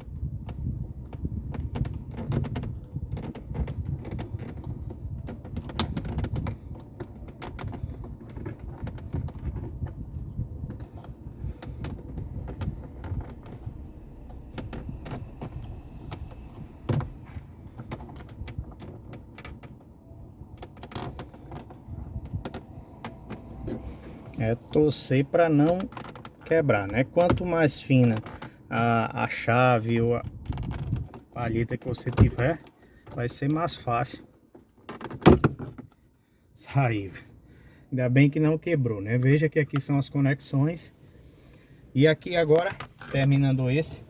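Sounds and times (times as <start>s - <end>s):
low steady rumble: 0.0s - 25.2s.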